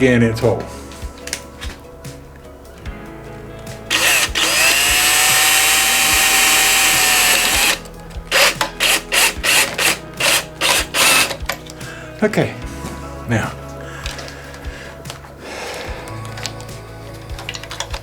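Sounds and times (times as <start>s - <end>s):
power drill motor spinning: 3.9s - 11.6s.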